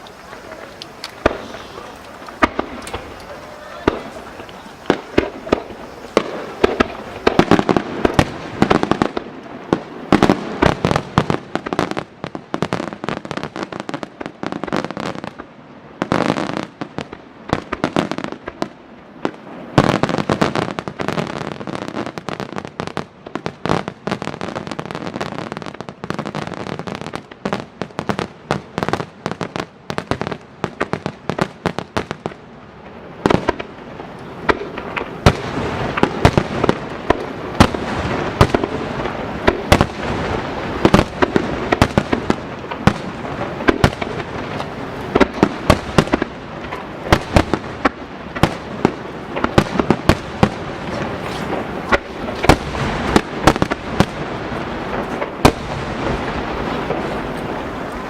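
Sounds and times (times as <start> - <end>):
fireworks shells bursting: 0.0 - 9.1, 33.4 - 58.0.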